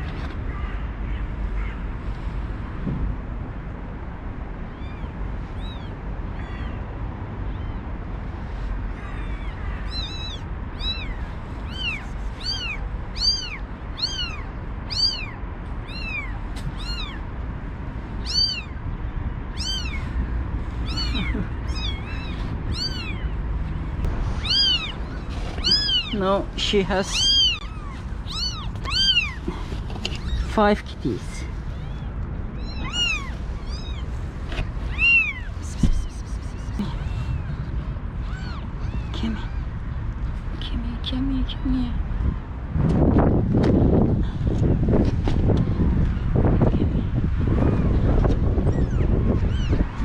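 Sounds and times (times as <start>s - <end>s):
kittens mewing: 8.9s - 17.3s, 18.2s - 18.8s, 19.5s - 23.4s, 24.0s - 26.4s, 27.0s - 39.8s, 48.6s - 50.0s.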